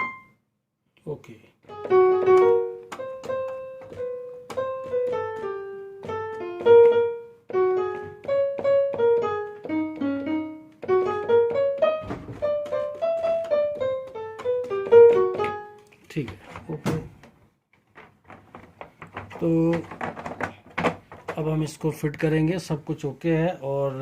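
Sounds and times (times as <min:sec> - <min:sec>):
piano notes played singly: 0:00.0 - 0:00.4, 0:01.6 - 0:15.9.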